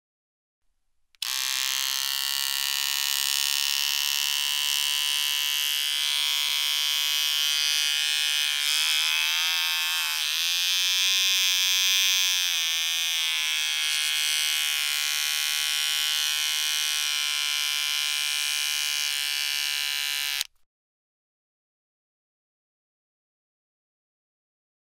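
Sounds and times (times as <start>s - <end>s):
electric beard trimmer buzzing: 1.2s - 20.6s.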